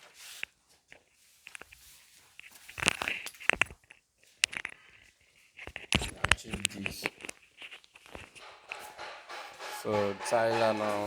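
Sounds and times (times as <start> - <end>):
clicks and knocks of hard objects: 2.4 - 11.0.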